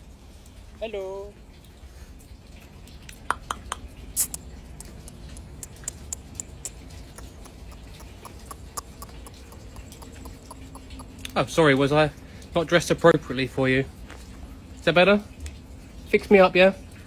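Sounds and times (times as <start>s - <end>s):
raven clicking and tapping: 3.1s - 11.4s.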